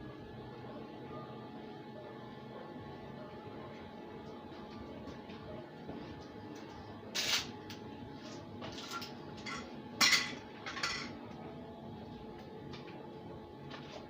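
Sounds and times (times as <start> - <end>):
metal tools clanking on workbench: 8.8 - 11.2.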